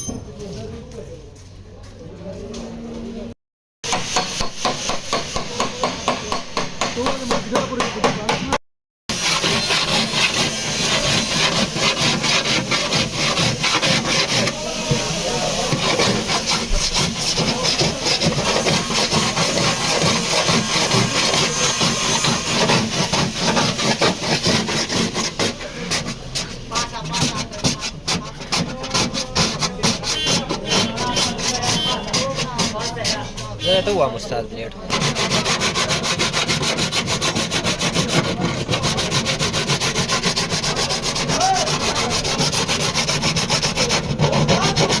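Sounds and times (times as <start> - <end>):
abrasive rubbing on car panel: 9.1 - 34.1, 34.9 - 45.0.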